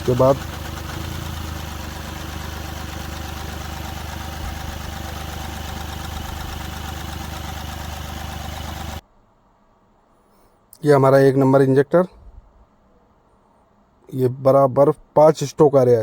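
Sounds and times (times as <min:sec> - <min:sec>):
diesel engine idling rough: 0:00.0 - 0:09.0.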